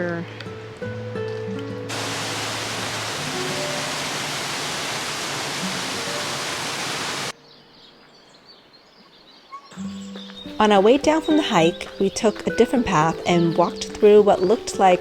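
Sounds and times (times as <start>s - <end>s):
loud steady rushing noise: 1.9s - 7.3s
faint birdsong: 2.0s - 15.0s
soft background music: 9.6s - 15.0s.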